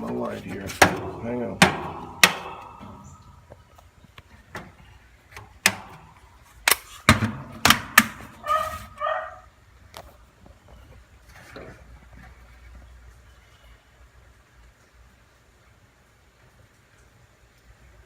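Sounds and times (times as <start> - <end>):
hand tools knocking and clicking: 0.7 - 3.1.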